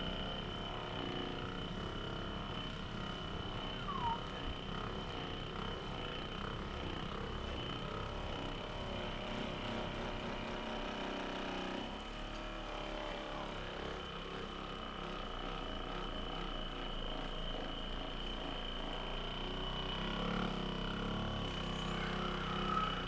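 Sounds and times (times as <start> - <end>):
electric motor whine: 20.1 - 23.0.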